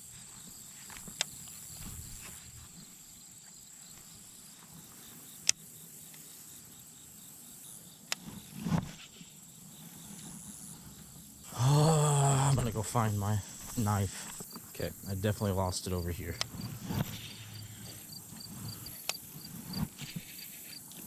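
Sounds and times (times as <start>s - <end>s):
insects trilling: 0.0s - 21.0s.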